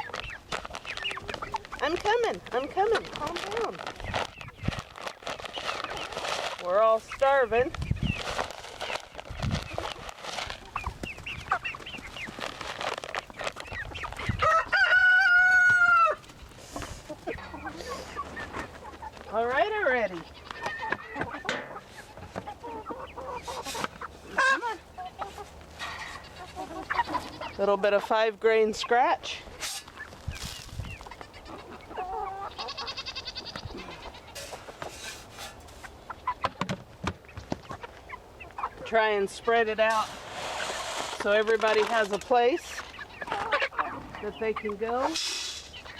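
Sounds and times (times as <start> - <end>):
chickens clucking: 0.0 - 45.9
rooster crowing: 14.4 - 16.2
goat bleating: 31.4 - 34.5.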